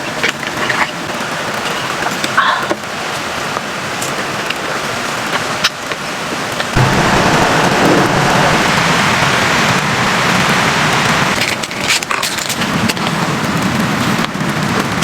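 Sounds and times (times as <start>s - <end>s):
blizzard wind and snow: 6.7s - 11.6s.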